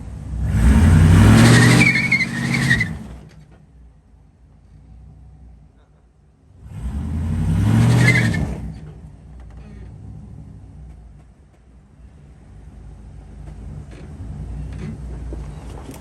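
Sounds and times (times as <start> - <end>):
car engine revving: 0.0 - 3.6, 6.5 - 11.3.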